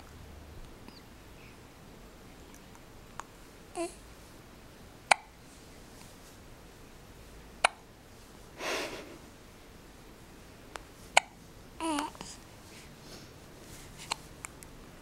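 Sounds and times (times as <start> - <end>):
baby hiccupping: 5.1 - 5.4, 7.6 - 7.8, 11.2 - 12.3
baby breathing: 11.8 - 14.3.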